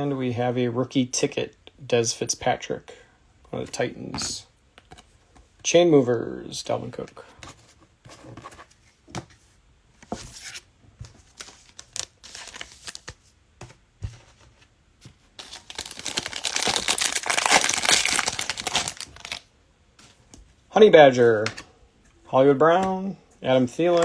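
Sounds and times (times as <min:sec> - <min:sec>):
plastic wrapper rustling: 0:11.3 - 0:13.2, 0:15.4 - 0:19.5
plastic wrapper tearing: 0:15.4 - 0:19.5.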